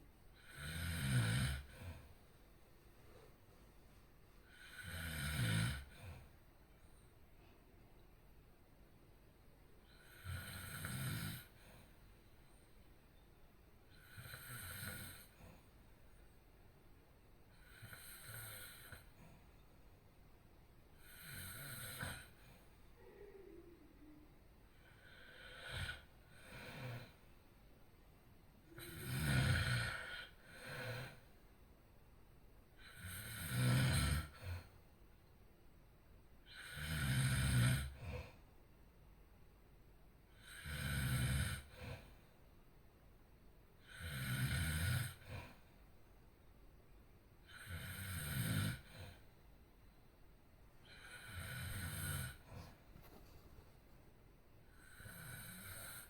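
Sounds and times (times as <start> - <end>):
person snoring: 0.4 - 2.0, 28.7 - 31.2, 32.8 - 34.7, 36.5 - 38.2, 47.5 - 49.2, 50.8 - 52.6, 54.7 - 56.0.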